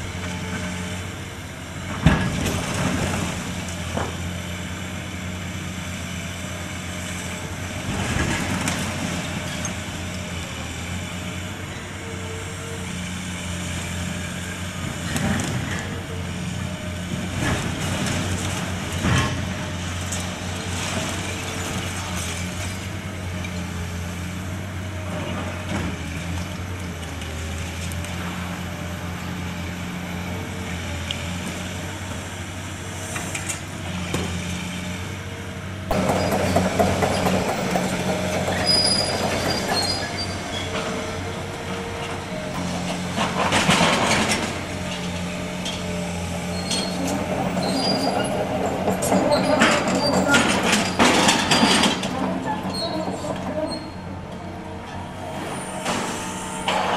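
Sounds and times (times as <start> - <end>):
demolition machinery engine: 0.0 - 56.9.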